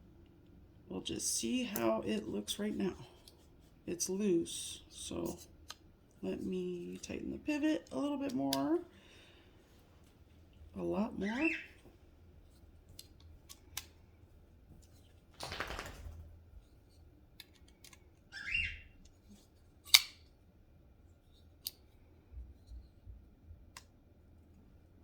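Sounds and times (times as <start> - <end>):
screwdriver and knife clicks: 19.9 - 20.2.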